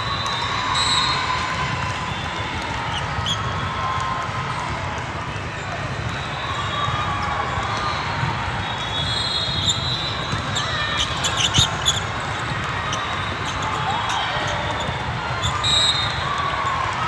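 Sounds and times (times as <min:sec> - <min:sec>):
crowd noise: 0:00.0 - 0:17.0
ball bouncing on court: 0:09.5 - 0:17.0.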